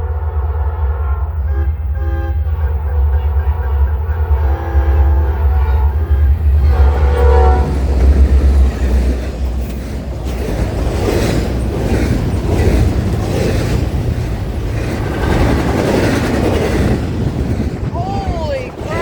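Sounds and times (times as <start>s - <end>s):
train air horn chord: 0.0s - 7.9s
train rumbling past: 0.0s - 19.0s
wheels clattering over rail joints: 7.7s - 17.9s.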